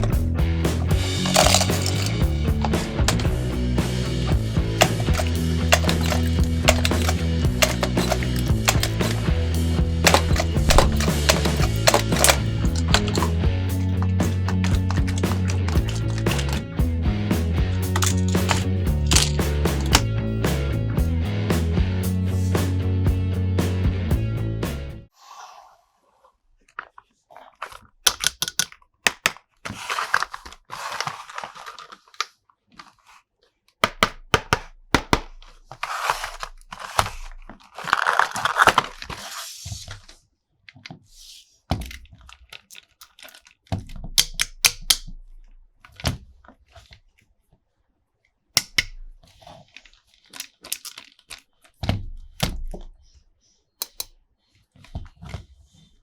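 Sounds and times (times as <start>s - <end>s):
plastic toy parts clicking: 0.8s - 3.3s, 4.8s - 16.6s, 17.9s - 20.0s, 27.6s - 33.0s, 33.8s - 39.2s, 41.8s - 46.2s, 48.6s - 51.8s, 53.8s - 54.2s
packaging tearing and crinkling: 29.2s - 33.2s, 35.8s - 40.2s.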